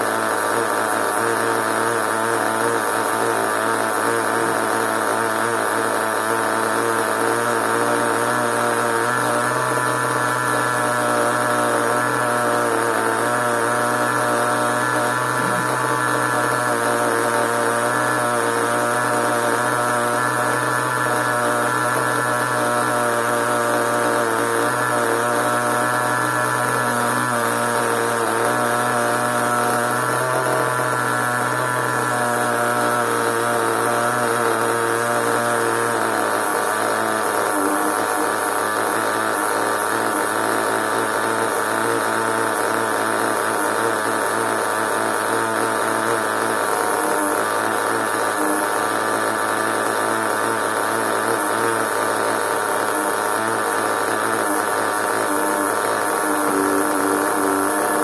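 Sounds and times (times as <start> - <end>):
small model engine buzzing: 0.0 - 58.0.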